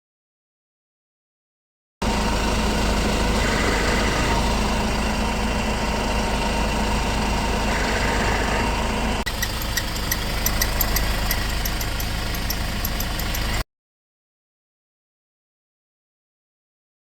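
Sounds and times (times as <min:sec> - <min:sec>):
van engine idling: 0:02.0 - 0:13.6.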